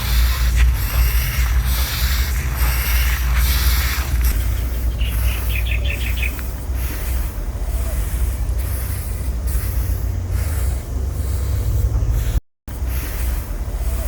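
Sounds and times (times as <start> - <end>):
steady low rumble: 0.0 - 14.0
bird chirps: 3.0 - 6.6.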